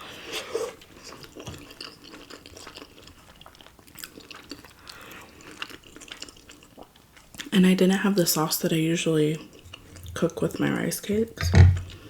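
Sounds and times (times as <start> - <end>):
close chewing of soft food: 0.0 - 7.6, 9.2 - 10.9, 11.6 - 12.0.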